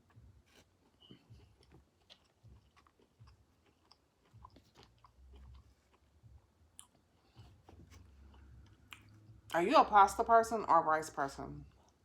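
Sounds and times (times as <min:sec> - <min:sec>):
mouth chewing clicks and smacks: 0:00.0 - 0:09.4.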